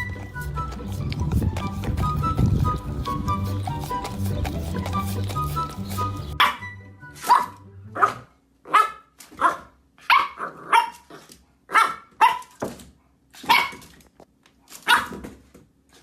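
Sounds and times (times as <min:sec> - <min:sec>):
dog barking: 0:06.4 - 0:06.6, 0:07.2 - 0:11.1, 0:11.7 - 0:12.6, 0:13.4 - 0:13.9, 0:14.8 - 0:15.2.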